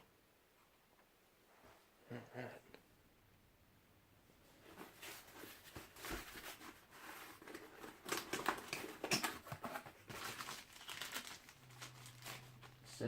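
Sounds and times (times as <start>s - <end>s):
cardboard box rustling: 4.6s - 12.8s.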